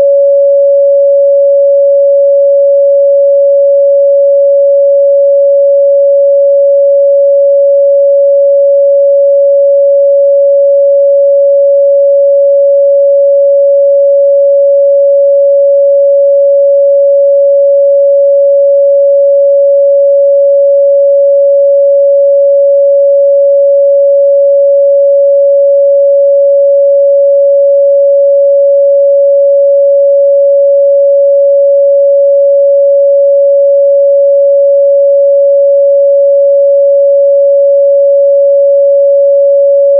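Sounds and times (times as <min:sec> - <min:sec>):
sine wave test tone: 0:00.0 - 0:39.9.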